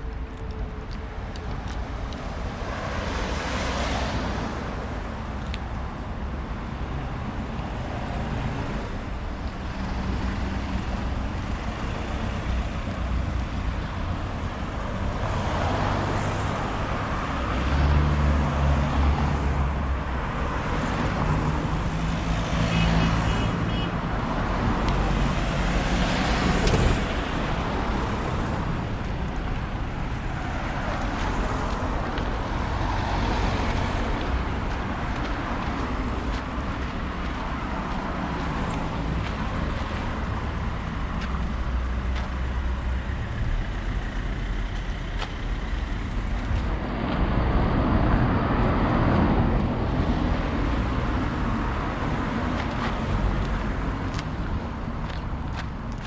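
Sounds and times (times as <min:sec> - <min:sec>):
vehicles passing: 0:00.0 - 0:56.0.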